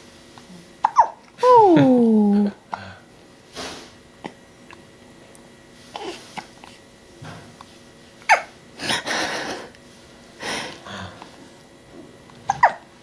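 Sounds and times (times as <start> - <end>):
baby hiccuping: 0.8 - 1.2, 8.3 - 8.5, 12.5 - 12.8.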